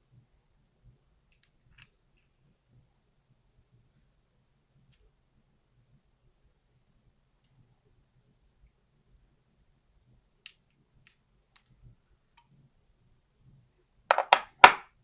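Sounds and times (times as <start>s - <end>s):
small metal parts clicking: 1.3s - 2.4s
loud knock: 14.1s - 14.8s.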